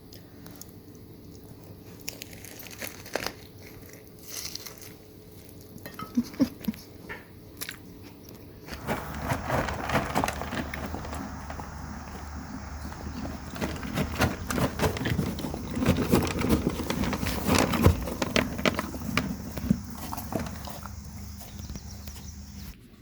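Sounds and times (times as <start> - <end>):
crunchy biting and chewing: 0.5 - 5.8, 8.7 - 22.8
dense noise: 8.7 - 22.8.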